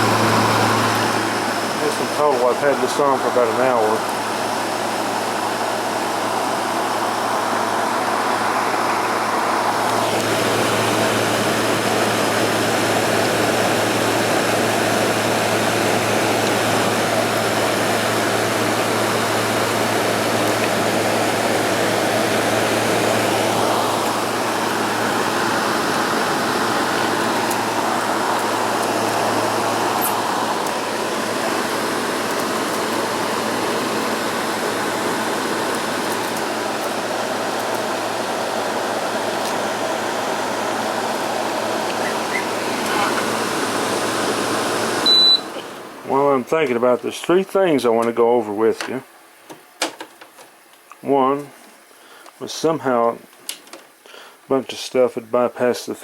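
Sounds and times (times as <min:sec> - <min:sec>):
window air conditioner running: 0:00.0 - 0:56.0.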